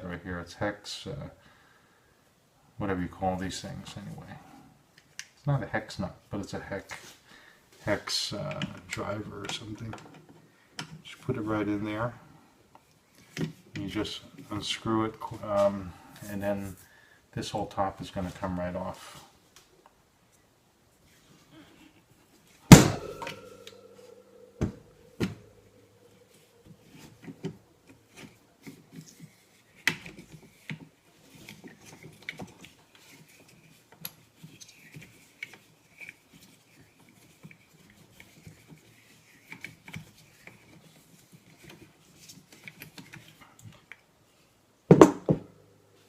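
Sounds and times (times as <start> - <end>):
metal clank with ringing: 22.7 - 25.4
knocks of parts: 22.7 - 25.5.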